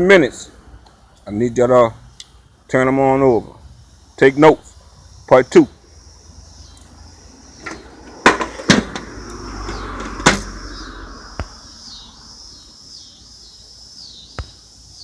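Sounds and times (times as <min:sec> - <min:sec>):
sharp knocks and clunks: 0:07.6 - 0:10.6.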